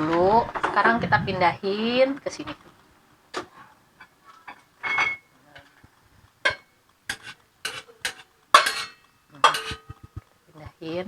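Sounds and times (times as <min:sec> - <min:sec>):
utensil clinking against pot: 0:04.0 - 0:10.3.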